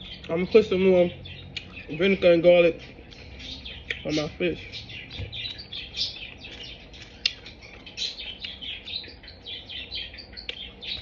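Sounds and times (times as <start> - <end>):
wet chewing and lip-smacking: 1.3 - 1.9, 2.8 - 4.1, 5.1 - 9.4, 10.2 - 11.0.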